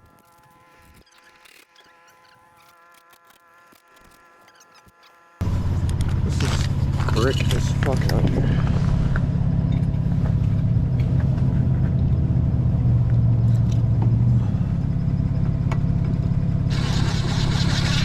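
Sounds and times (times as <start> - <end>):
engine idling: 5.4 - 18.0.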